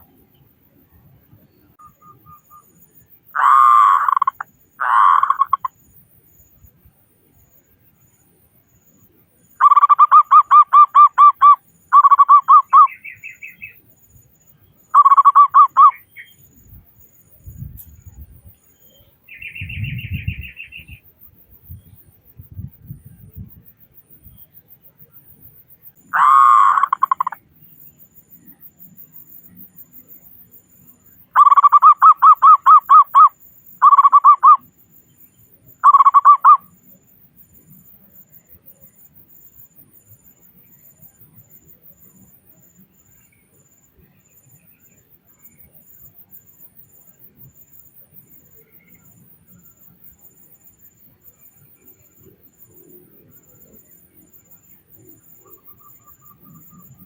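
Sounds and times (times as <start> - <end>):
dove cooing: 3.4 - 5.7, 26.2 - 27.4.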